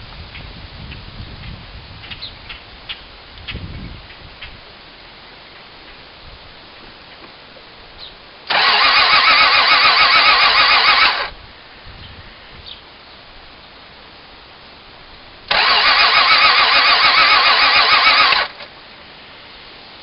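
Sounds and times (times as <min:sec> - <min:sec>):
car starter motor cranking: 0:08.5 - 0:11.3, 0:15.5 - 0:18.7.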